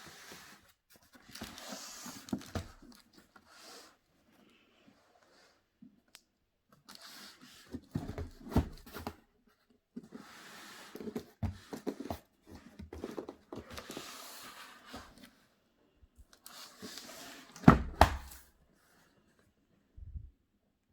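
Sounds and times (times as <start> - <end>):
cardboard rustling and scraping: 0.0 - 4.1, 6.9 - 9.2, 10.0 - 15.5, 16.4 - 19.1.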